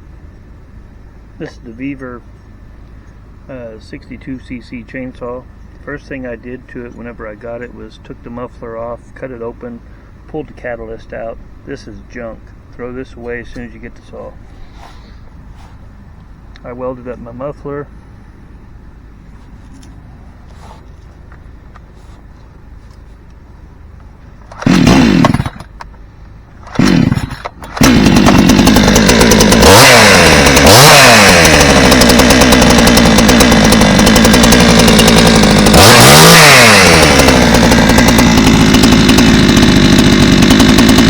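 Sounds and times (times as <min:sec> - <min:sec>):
chainsaw starting and revving: 0:24.5 - 0:25.9, 0:26.6 - 0:41.0.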